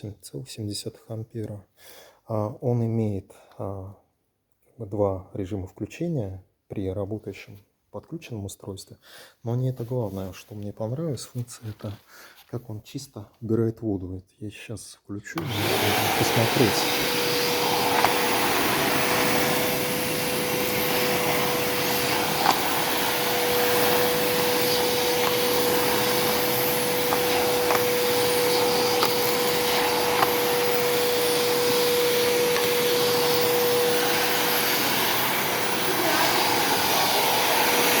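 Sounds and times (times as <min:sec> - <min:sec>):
vacuum cleaner motor whine: 0:15.4 - 0:38.0.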